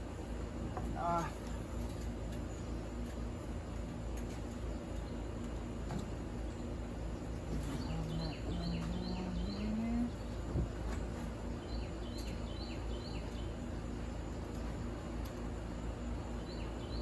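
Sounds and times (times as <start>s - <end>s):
low background rumble: 0.0s - 17.0s
bird chirping: 6.6s - 10.1s, 11.5s - 13.7s.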